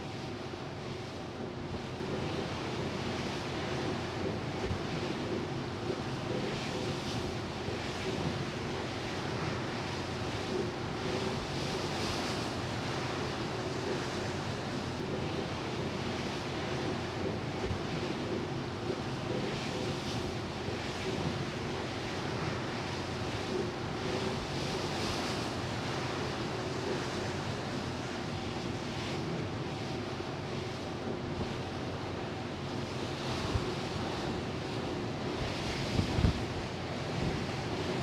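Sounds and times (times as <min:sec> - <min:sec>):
water rushing along a hull: 0:00.1 - 0:38.0
wind on microphone: 0:35.4 - 0:37.6.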